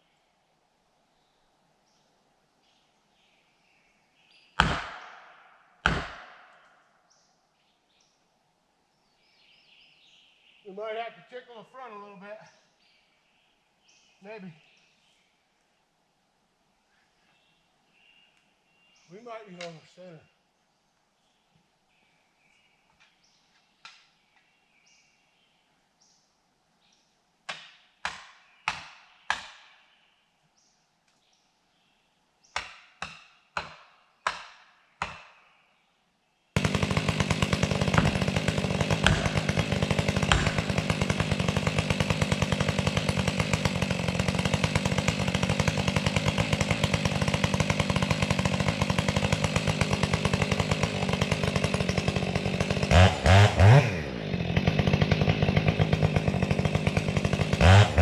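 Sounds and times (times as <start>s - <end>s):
chainsaw at full throttle: 4.6s - 5.0s, 36.6s - 58.0s.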